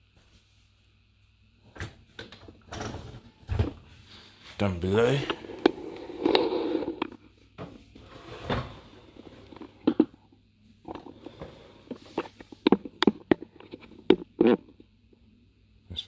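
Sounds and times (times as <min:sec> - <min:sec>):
dishwasher rack sliding: 0:08.0 - 0:09.0.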